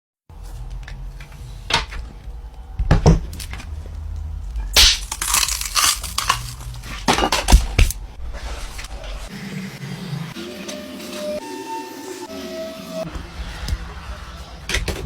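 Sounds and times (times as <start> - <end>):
crunching and crackling: 4.8 - 8.0.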